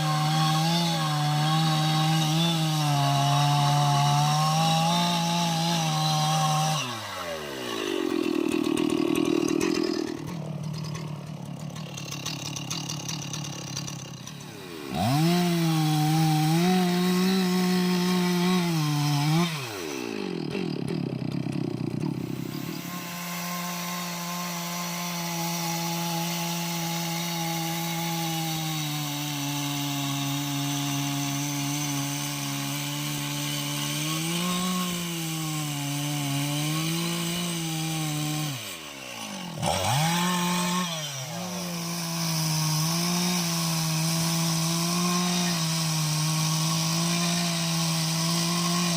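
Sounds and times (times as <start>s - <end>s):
chainsaw cutting wood: 0.0s - 48.9s.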